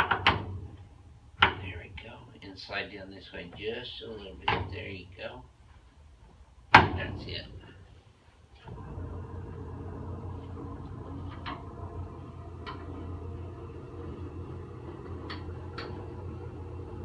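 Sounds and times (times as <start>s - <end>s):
motorised table humming: 8.6s - 17.0s.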